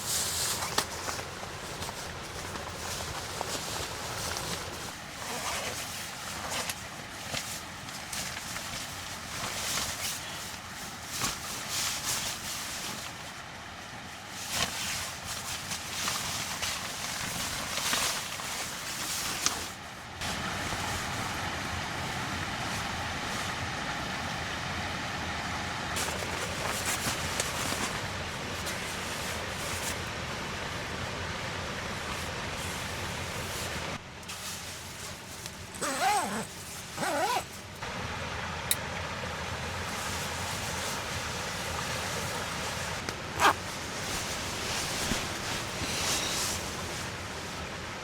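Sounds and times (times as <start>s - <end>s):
rain on tent canvas: 0.0s - 24.4s, 25.9s - 48.0s.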